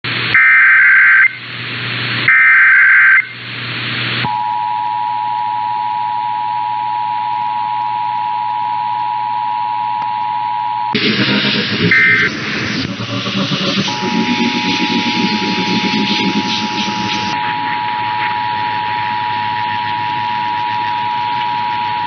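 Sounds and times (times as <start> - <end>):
hiss: 11.0 - 17.4
voice message: 11.0 - 17.7
screeching digital header bursts: 11.0 - 21.2
steady two-tone attention signal: 11.0 - 21.8.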